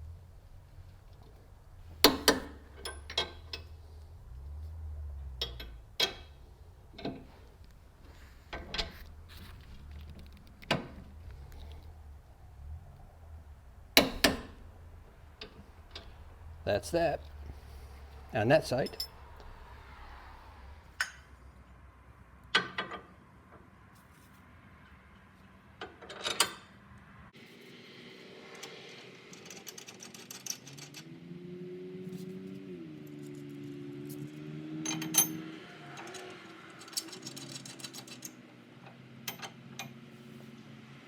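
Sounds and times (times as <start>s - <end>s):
metal knocks and clinks: 2.0s - 3.7s, 5.4s - 6.4s, 18.8s - 19.4s, 34.8s - 38.4s, 39.2s - 40.0s.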